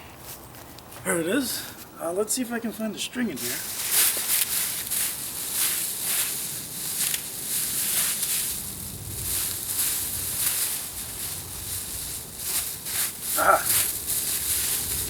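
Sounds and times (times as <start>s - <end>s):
packing material rustling: 3.4s - 15.0s.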